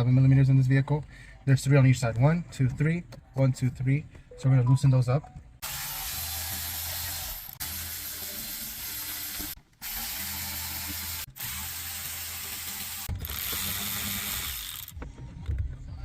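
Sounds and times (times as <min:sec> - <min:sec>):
power driver whirring: 0:05.6 - 0:15.0.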